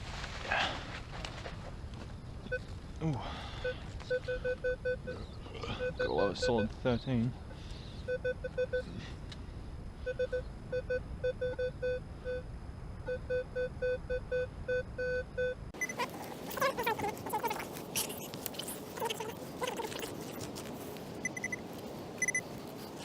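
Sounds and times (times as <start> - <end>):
metal detector beeps: 10.0 - 12.4, 13.1 - 16.0, 21.2 - 21.6, 22.2 - 22.4.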